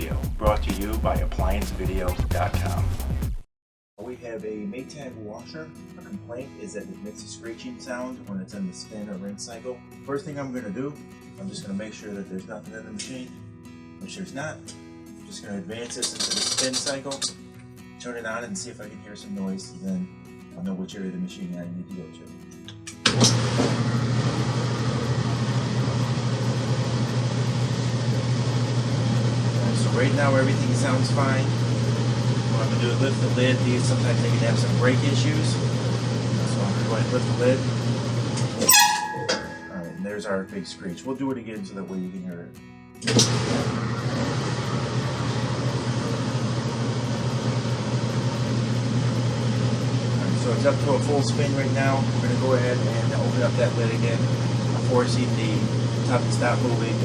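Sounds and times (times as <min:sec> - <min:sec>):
washing machine spin cycle: 0:23.1 - 0:39.5, 0:43.0 - 0:57.0.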